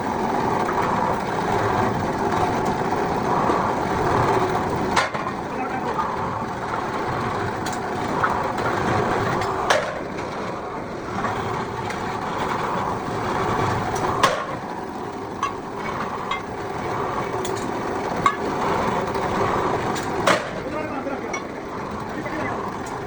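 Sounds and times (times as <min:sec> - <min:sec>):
workshop din: 0:13.6 - 0:23.0.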